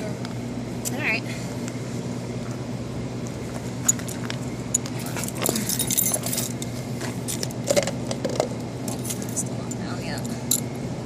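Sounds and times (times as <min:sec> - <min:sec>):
low hum: 0:00.0 - 0:11.0
metal tools clinking: 0:03.8 - 0:06.7.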